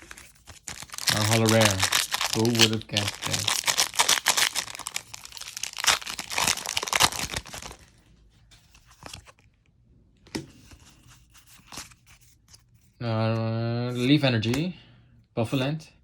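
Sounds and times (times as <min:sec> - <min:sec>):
foil wrapper crinkling and tearing: 0:00.0 - 0:07.9.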